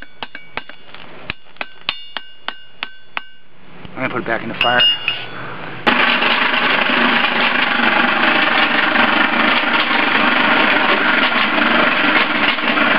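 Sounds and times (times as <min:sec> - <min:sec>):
forge air blower whirring: 0:05.9 - 0:12.9.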